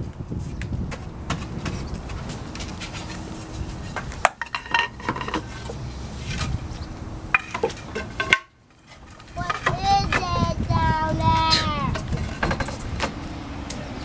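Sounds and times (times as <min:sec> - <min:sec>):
metal clinking and rattling: 0:03.9 - 0:05.8, 0:11.5 - 0:13.3.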